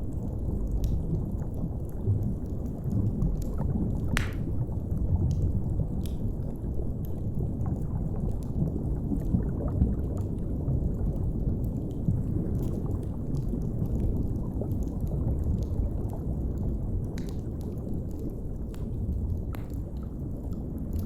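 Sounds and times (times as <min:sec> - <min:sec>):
gurgling water: 0:00.0 - 0:21.0
muffled underwater rumble: 0:00.0 - 0:21.0
crackling wood fire pops: 0:03.0 - 0:07.2, 0:12.6 - 0:21.0.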